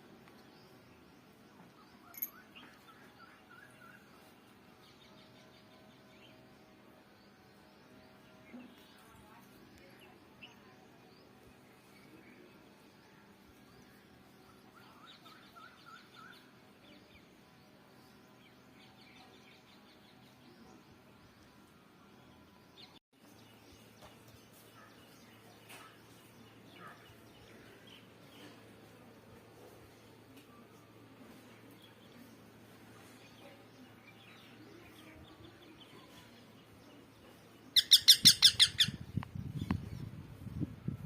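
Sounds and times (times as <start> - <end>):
parrot chirping: 37.8 - 39.0.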